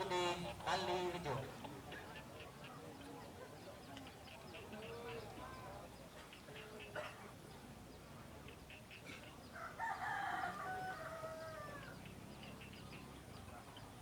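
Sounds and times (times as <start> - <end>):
rooster crowing: 9.6 - 12.0.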